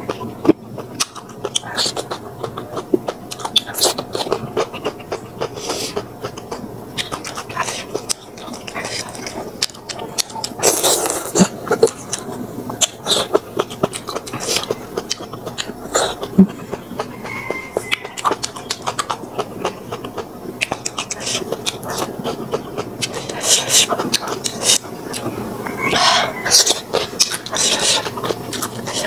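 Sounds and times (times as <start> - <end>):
chewing and lip-smacking: 0.0 - 29.0.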